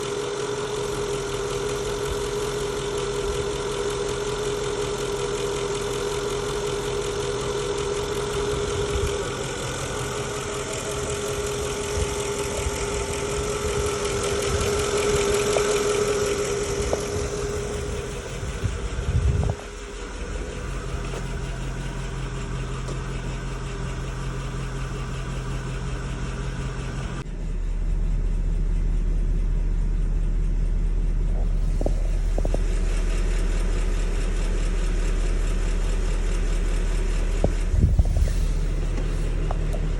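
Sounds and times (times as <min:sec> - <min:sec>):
car engine idling: 0:00.0 - 0:39.9
engine ticking: 0:00.0 - 0:39.9.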